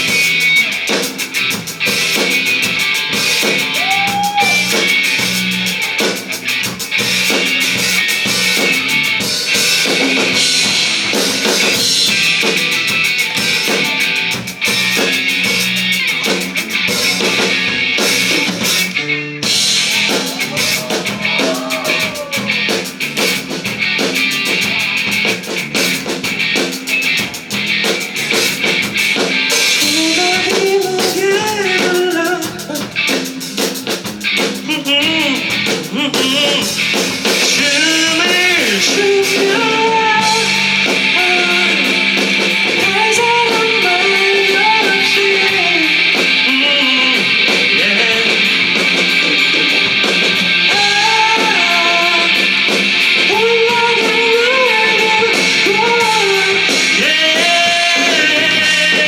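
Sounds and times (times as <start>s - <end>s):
rock band playing: 0.0s - 59.0s
person singing lead vocal: 3.7s - 5.0s, 19.7s - 22.9s, 29.6s - 33.2s, 34.6s - 50.0s, 50.6s - 59.0s.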